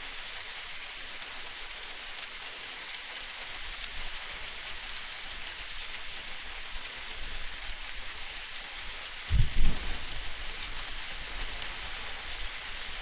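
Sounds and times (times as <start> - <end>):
low thuds: 9.3 - 10.7
water hissing: 9.3 - 13.0.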